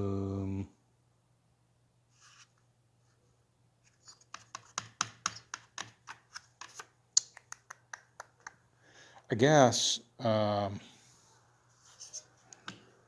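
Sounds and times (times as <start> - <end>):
faint scrape: 11.0 - 12.5.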